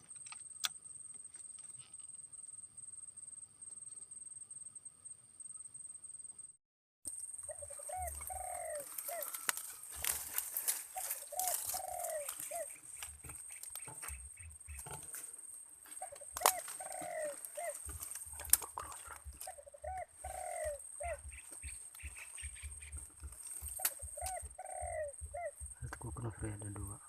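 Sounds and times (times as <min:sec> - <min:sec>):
dove cooing: 0:07.4 - 0:27.0
sharp clicks: 0:17.7 - 0:19.6.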